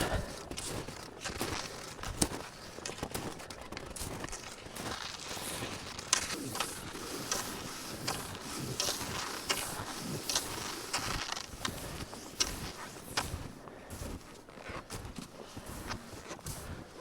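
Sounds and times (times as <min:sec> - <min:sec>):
footsteps crunching in snow: 0:00.0 - 0:17.0.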